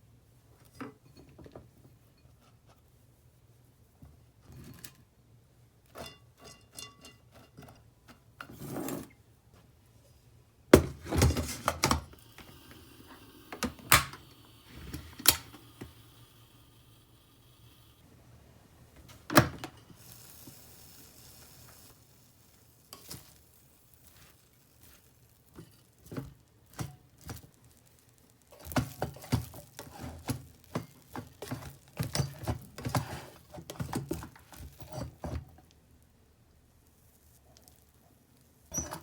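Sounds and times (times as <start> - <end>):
utensils clinking on dishes: 5.9 - 7.8.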